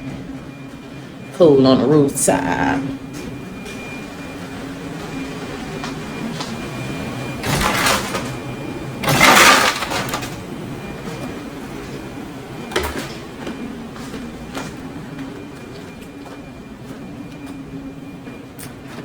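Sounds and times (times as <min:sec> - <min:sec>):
steady low hum: 0:00.0 - 0:19.0
ice clattering into container: 0:07.4 - 0:08.3, 0:09.0 - 0:10.4.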